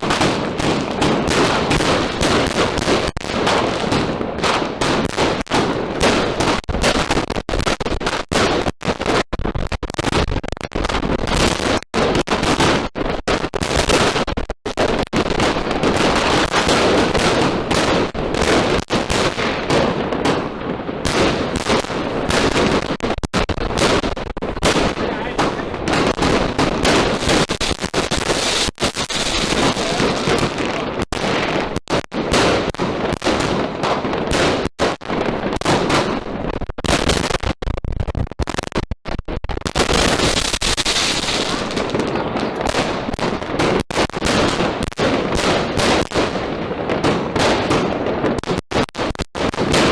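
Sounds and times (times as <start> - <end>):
firework barrage: 0.0 - 49.9.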